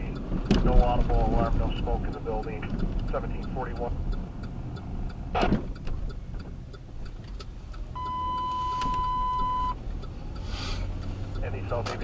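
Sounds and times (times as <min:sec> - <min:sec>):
vehicle cabin rumble: 0:00.0 - 0:12.0
radio electronic beep: 0:08.0 - 0:09.8.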